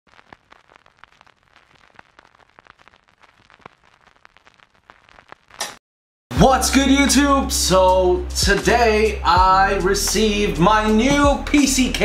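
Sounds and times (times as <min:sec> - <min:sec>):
faint crackling clicks: 0:00.1 - 0:05.8.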